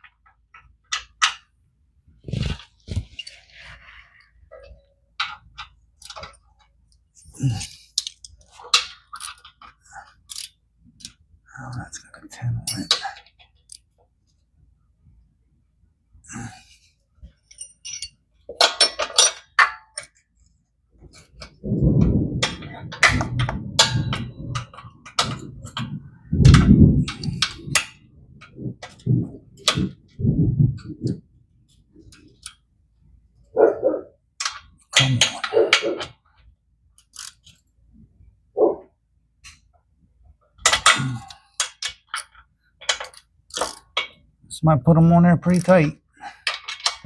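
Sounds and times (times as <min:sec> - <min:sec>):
metal hand tools clinking: 0:17.4 - 0:20.1.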